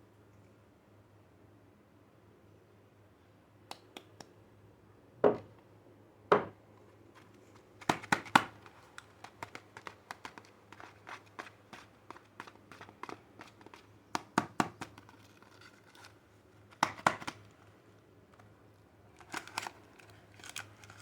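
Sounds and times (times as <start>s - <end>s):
soap wrapper rustling and crinkling: 7.2s - 17.7s, 18.3s - 21.0s.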